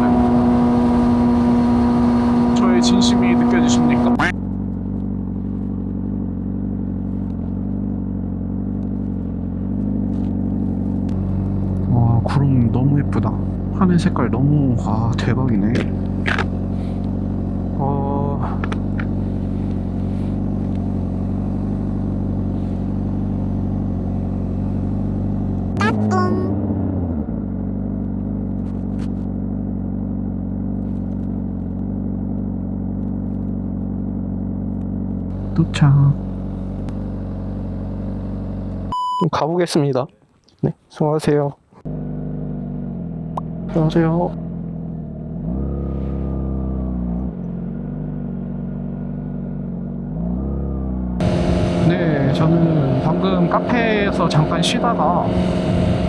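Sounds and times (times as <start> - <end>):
motorcycle engine running: 0.0 - 39.0, 41.8 - 56.0.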